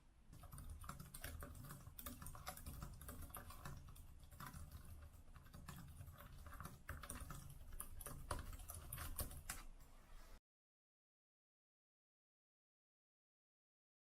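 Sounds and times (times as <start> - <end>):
computer keyboard typing: 0.3 - 9.7.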